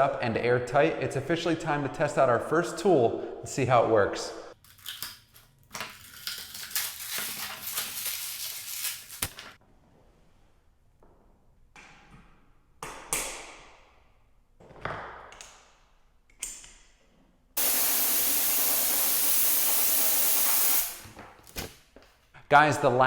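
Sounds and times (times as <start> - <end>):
compressed air hissing: 17.6 - 21.2.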